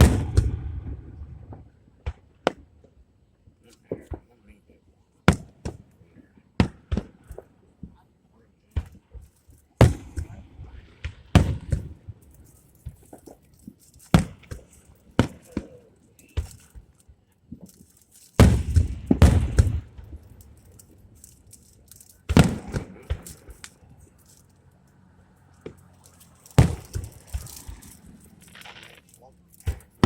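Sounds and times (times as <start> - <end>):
fireworks crackling: 0.0 - 2.6, 8.8 - 30.0
fireworks booming: 0.0 - 2.7, 9.8 - 13.4, 18.4 - 20.6, 22.2 - 23.9, 26.5 - 30.0.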